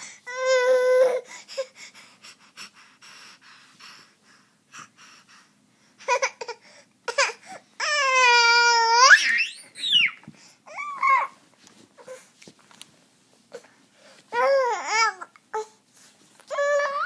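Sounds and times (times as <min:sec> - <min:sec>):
child fussy cries: 0:07.8 - 0:11.4, 0:16.5 - 0:17.0
child whining: 0:07.8 - 0:11.4, 0:16.5 - 0:17.0
faint rustling: 0:11.2 - 0:14.4.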